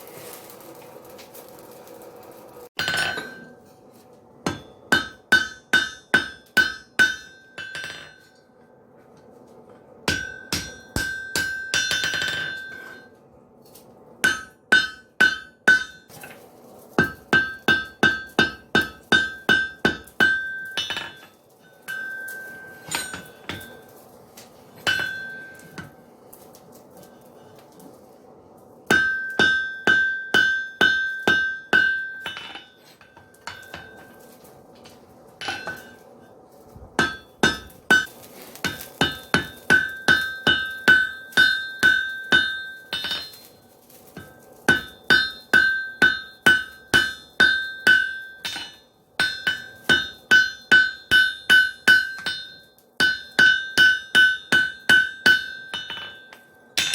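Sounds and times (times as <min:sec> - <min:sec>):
hammer striking anvil: 0:02.8 - 0:03.6, 0:04.4 - 0:08.3, 0:10.1 - 0:13.1, 0:14.2 - 0:16.2, 0:17.0 - 0:21.3, 0:21.9 - 0:23.8, 0:24.8 - 0:26.0, 0:28.9 - 0:34.3, 0:35.4 - 0:36.0, 0:37.0 - 0:43.5, 0:44.2 - 0:56.9.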